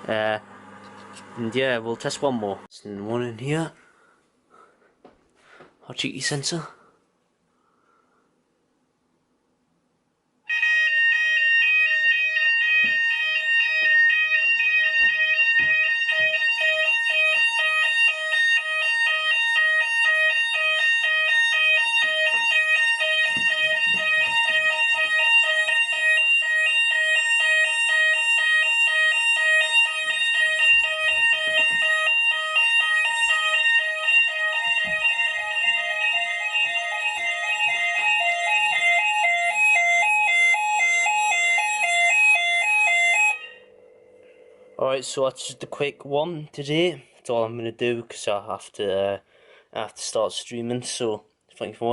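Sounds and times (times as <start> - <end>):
fire alarm warbling tone: 10.5 - 45.0.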